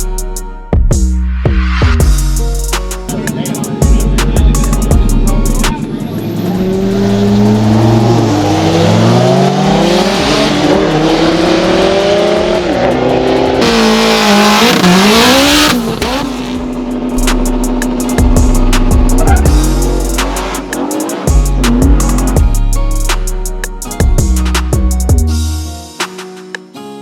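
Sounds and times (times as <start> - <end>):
car engine revving hard: 6.0 - 22.4.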